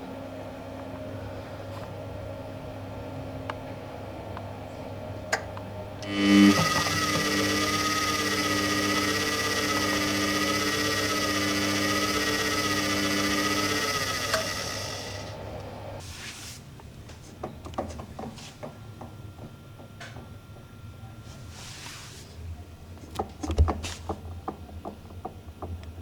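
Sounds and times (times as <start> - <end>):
washing machine motor whine: 5.7 - 16.0.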